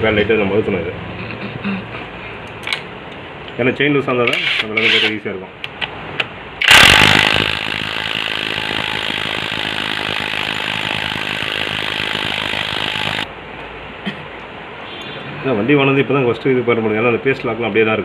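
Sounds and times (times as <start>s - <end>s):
power tool running: 6.6s - 13.3s.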